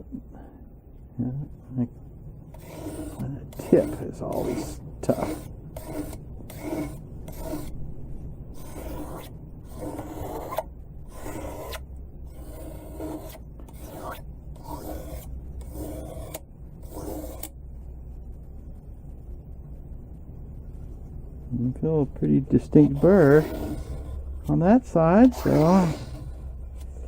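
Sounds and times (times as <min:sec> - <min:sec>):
knife scraping on sharpening stone: 0:12.4 - 0:17.5.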